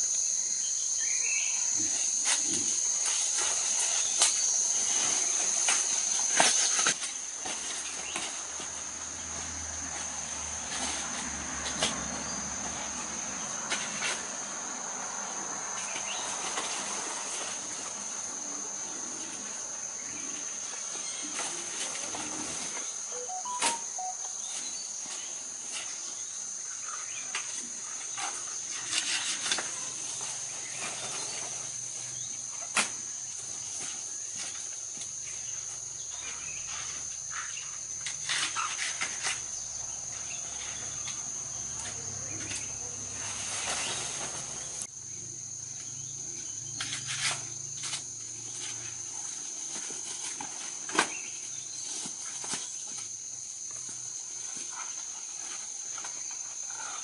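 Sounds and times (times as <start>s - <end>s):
high-pitched insect drone: 22.9s - 25.3s.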